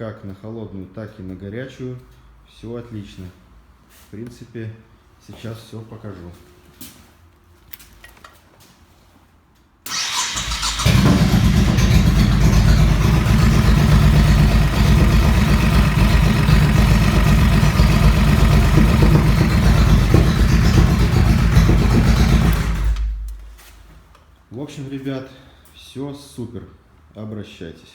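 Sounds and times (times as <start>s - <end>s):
motorcycle engine starting and running: 9.9s - 23.4s.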